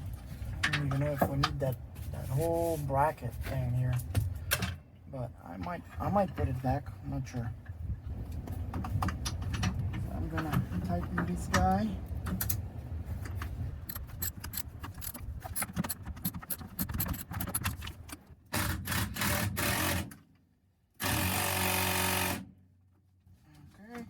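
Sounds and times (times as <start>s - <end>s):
rapid clicking: 13.9s - 18.0s.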